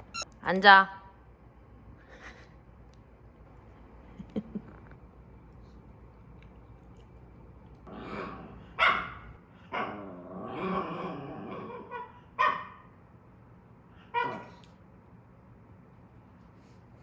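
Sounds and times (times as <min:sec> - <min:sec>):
dog vocalizing: 0:03.6 - 0:09.4
dog barking: 0:08.7 - 0:09.9, 0:11.9 - 0:12.9.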